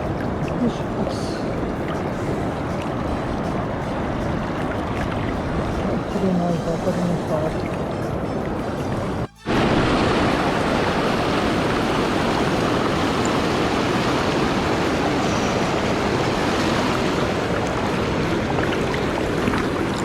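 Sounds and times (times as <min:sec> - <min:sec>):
river water rushing over rocks: 0:00.0 - 0:20.0.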